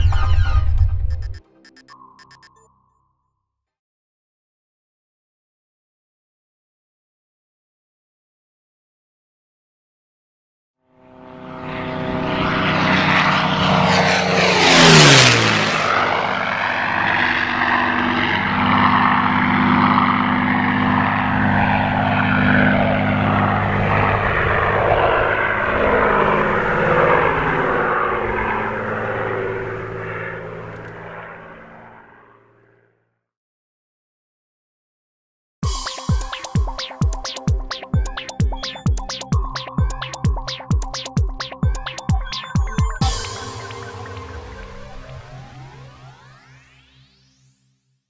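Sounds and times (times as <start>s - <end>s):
propeller plane flyby: 10.9s - 33.2s, 37.2s - 47.1s.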